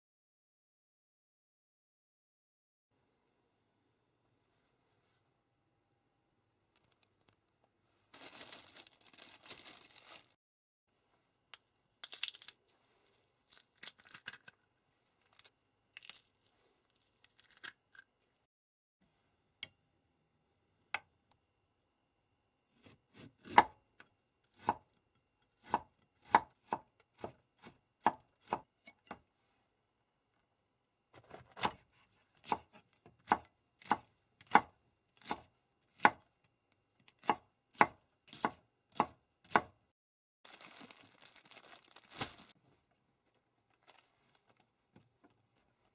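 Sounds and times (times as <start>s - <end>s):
knife chopping on cutting board: 22.8s - 23.8s, 25.6s - 29.2s, 31.2s - 36.2s, 37.2s - 39.8s.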